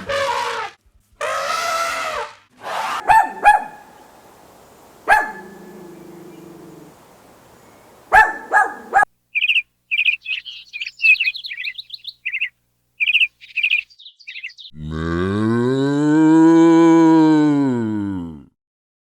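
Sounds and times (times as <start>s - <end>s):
small bird chirping: 3.0s - 14.8s
cow mooing: 5.0s - 9.0s, 14.8s - 18.4s.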